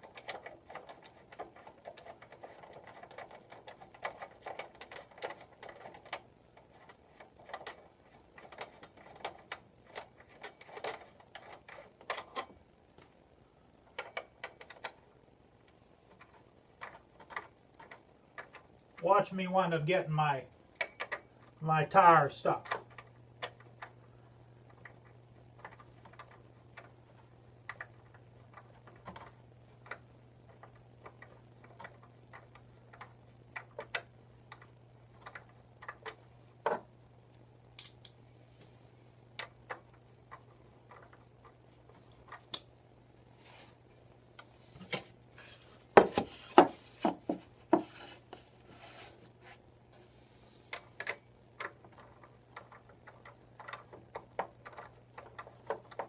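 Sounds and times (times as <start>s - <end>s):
tools clicking and knocking: 0.0s - 13.1s, 13.9s - 15.1s, 20.7s - 21.5s, 24.6s - 36.9s, 45.9s - 48.5s, 50.7s - 56.0s
steady low hum: 0.0s - 56.0s.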